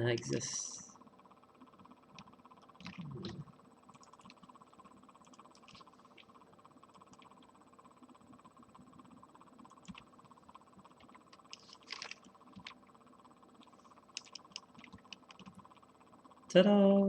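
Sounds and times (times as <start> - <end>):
computer mouse clicks: 1.8 - 4.5, 5.2 - 7.5, 9.6 - 12.8, 13.6 - 15.9.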